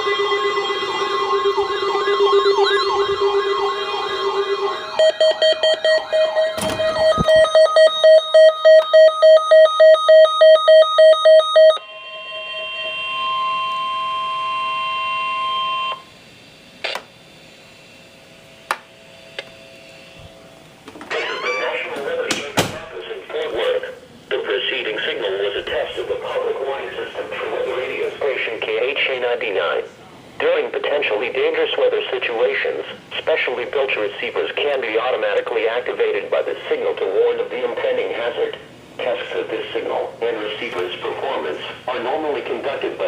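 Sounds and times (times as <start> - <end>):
rapid electronic beeping: 0.0 - 11.8
warbling siren-like alarm: 0.0 - 16.1
steady warning alarm tone: 0.0 - 16.7.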